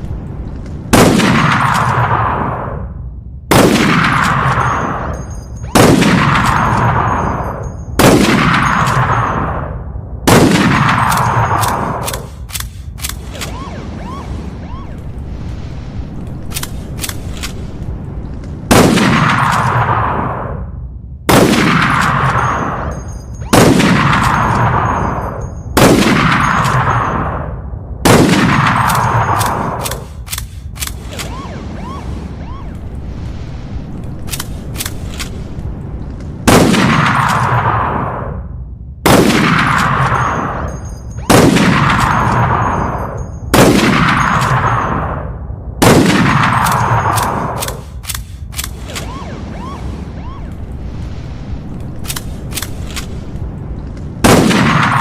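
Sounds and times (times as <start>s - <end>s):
rifle shots echoing: 0.9s - 2.7s, 3.5s - 9.7s, 10.3s - 14.2s, 18.7s - 20.4s, 21.3s - 32.2s, 36.4s - 38.2s, 39.0s - 45.2s, 45.8s - 50.3s, 54.2s - 55.0s
rifle bolt clicking: 11.1s - 13.5s, 28.9s - 31.3s, 46.6s - 49.1s, 52.0s - 53.1s.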